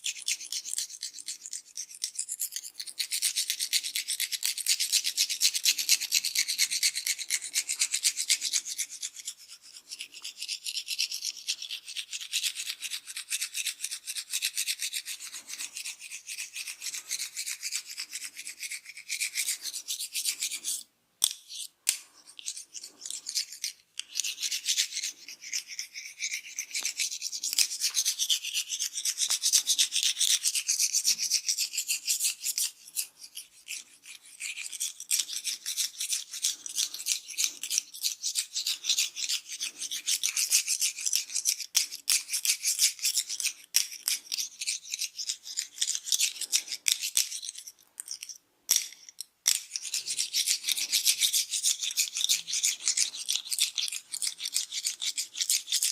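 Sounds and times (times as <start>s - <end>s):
hands scratching through hair: 15.0s - 48.8s, 49.5s - 55.9s.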